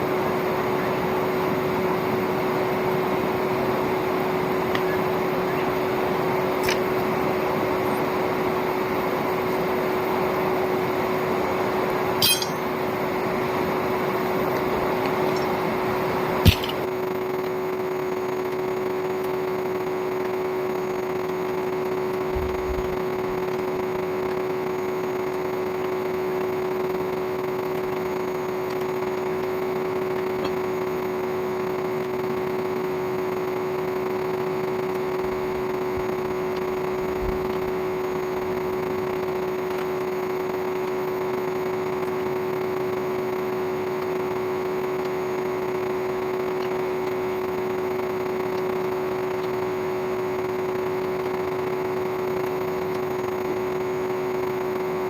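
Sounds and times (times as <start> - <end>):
sharp metallic clinks: 12.2 - 12.7.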